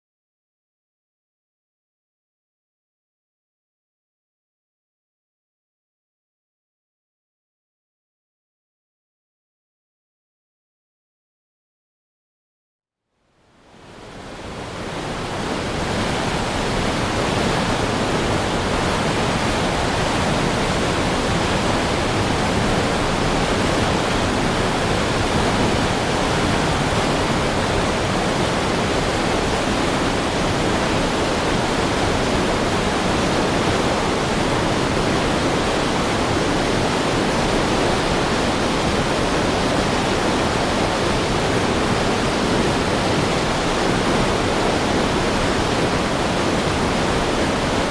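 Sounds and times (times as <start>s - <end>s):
river rushing: 13.7s - 47.9s.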